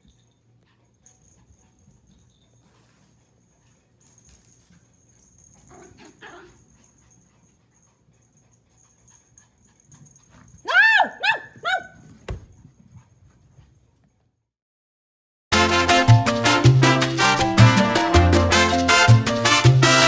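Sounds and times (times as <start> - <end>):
puppy barking high-pitched: 5.7 - 6.6, 10.6 - 12.0.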